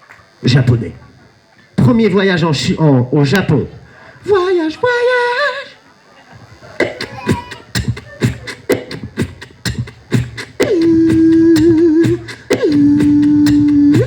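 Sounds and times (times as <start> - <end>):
long held vocal notes: 4.0 - 5.9, 6.5 - 14.0
beatboxing beat: 6.4 - 14.0.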